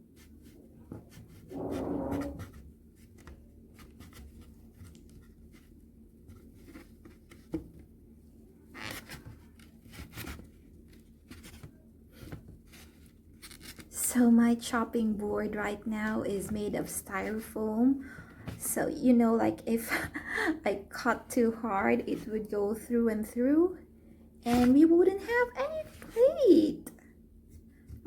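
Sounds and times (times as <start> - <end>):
objects scraping on tabletop: 1.2 - 2.6.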